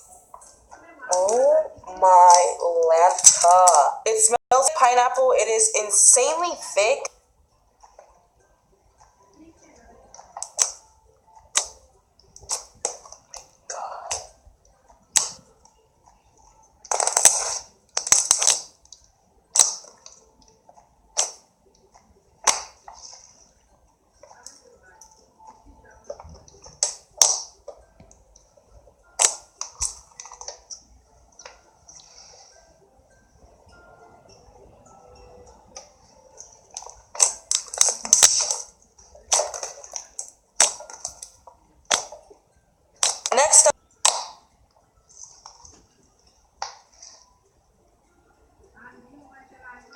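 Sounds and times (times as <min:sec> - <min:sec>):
slime squishing and crackling: 0:16.8 - 0:20.2, 0:36.8 - 0:42.2.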